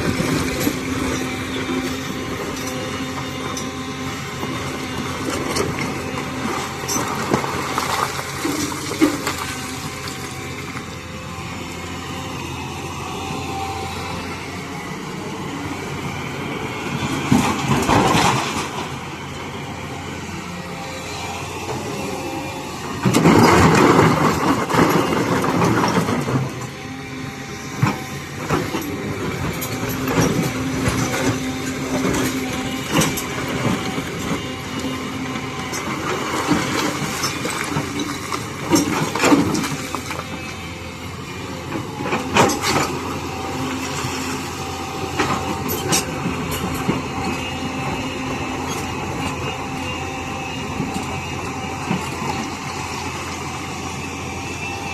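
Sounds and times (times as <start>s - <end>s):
excavator diesel engine running: 0.0s - 54.9s
grinding clatter of stone: 17.2s - 18.9s, 27.8s - 40.7s.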